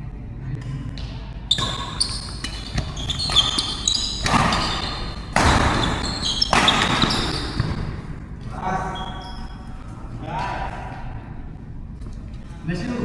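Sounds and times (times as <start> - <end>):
shoes squeaking on court: 1.0 - 8.1, 8.8 - 9.8
racket hits and thuds: 1.6 - 8.1.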